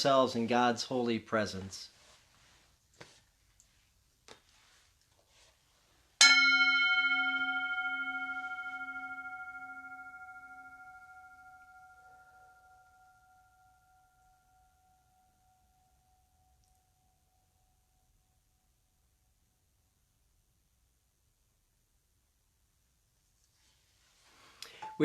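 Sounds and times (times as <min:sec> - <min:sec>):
singing bowl ringing: 0:06.2 - 0:18.1, 0:24.8 - 0:25.0.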